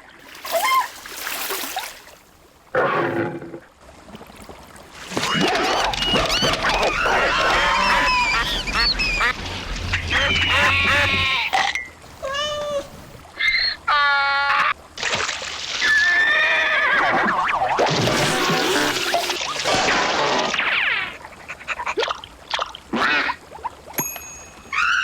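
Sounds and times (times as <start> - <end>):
animal cries sliding in pitch: 5.2 - 14.8.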